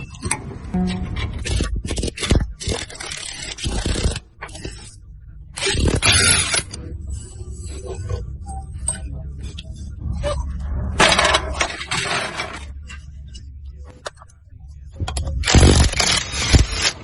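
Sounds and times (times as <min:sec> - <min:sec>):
steady low hum: 0:00.0 - 0:02.6, 0:03.4 - 0:16.0.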